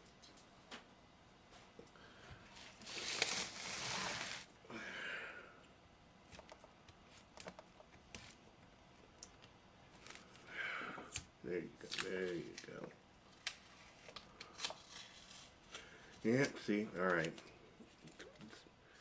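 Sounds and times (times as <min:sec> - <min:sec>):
rustling scrape of handled parts: 0:02.6 - 0:04.5.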